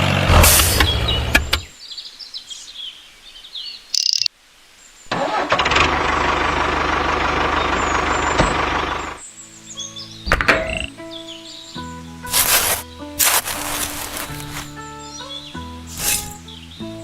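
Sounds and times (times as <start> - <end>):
birds chirping: 0.9 - 5.0, 10.9 - 16.8
engine starting: 5.1 - 6.6
vehicle engine running: 5.9 - 9.2.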